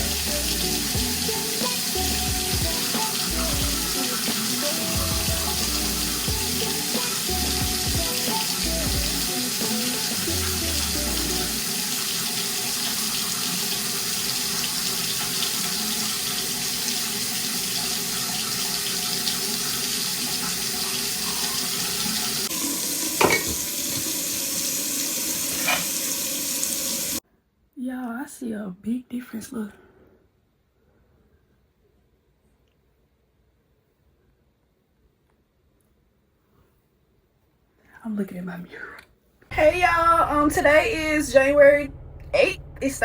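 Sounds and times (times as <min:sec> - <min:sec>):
background music: 0:00.0 - 0:11.9, 0:39.5 - 0:43.0
tap water running into sink: 0:00.0 - 0:27.2.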